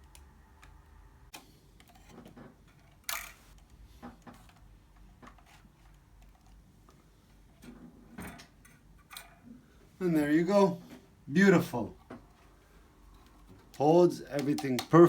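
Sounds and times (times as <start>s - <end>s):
wire clicks and rustles: 0.0s - 9.5s.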